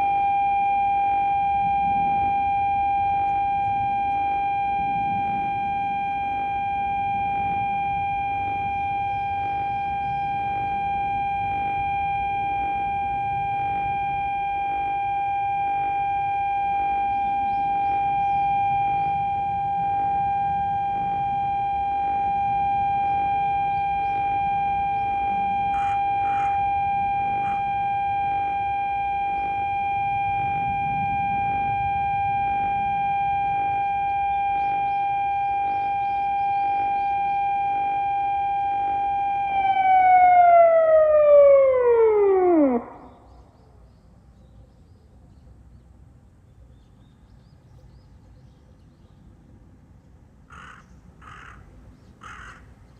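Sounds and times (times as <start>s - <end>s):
civil defence siren over loudspeakers: 0.0s - 43.5s.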